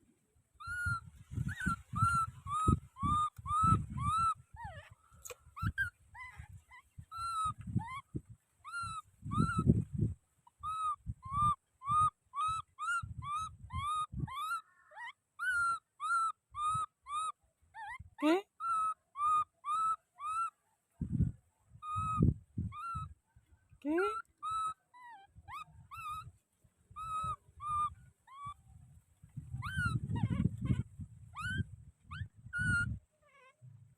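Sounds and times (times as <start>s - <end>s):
baby monkey crying: 0.6s - 9.7s, 10.5s - 20.5s, 21.8s - 23.1s, 24.0s - 26.3s, 27.0s - 28.6s, 29.6s - 33.6s.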